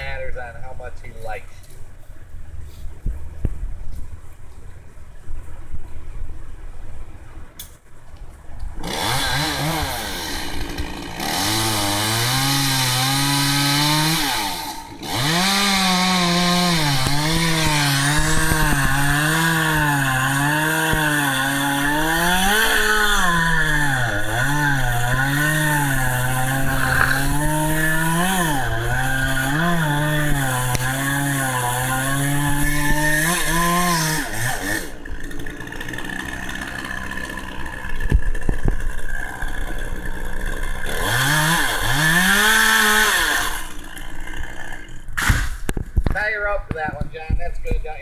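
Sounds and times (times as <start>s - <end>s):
chainsaw cutting wood: 8.8s - 46.1s.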